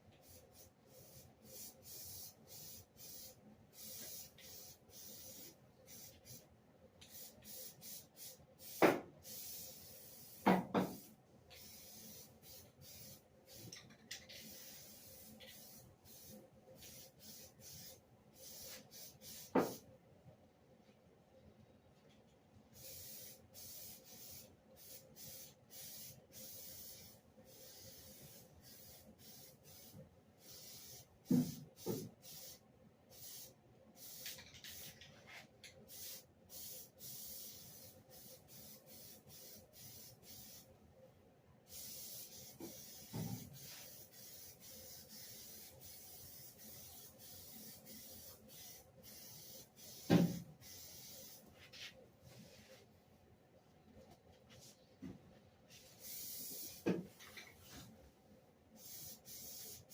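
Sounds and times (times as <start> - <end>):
hissing spray bursts: 0.2 - 6.4, 7.1 - 19.8, 22.8 - 35.0, 35.9 - 40.7, 41.7 - 51.5, 55.8 - 57.0, 58.8 - 59.9.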